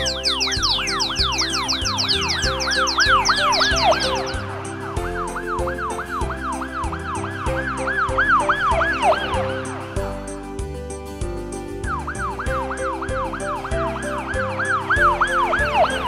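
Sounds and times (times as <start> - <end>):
siren-like synth warble: 0.0 - 4.6, 5.2 - 9.5, 11.9 - 16.0
high falling synth sweeps: 0.0 - 9.8
electronic children's music: 0.0 - 16.0.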